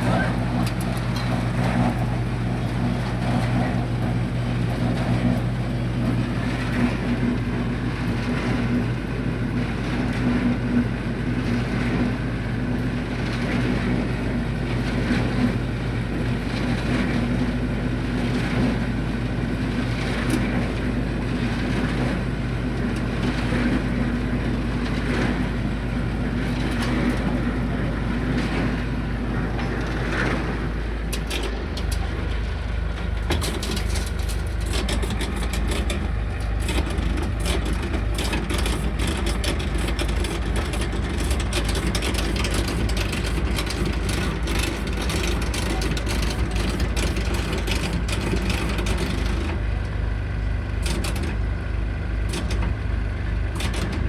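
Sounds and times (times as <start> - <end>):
motor hum: 0.0 - 9.0, 26.5 - 54.0
low machinery rumble: 0.0 - 54.0.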